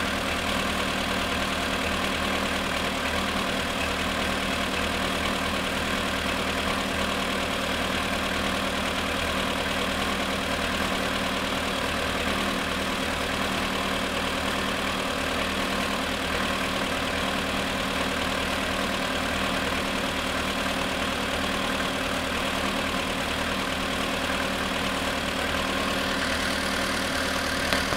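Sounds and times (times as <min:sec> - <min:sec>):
car engine idling with knock: 0:00.0 - 0:27.9.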